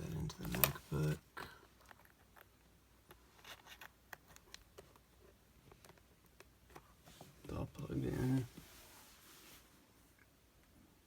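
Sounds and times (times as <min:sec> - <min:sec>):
cable clicks and rubbing: 0:00.1 - 0:00.9.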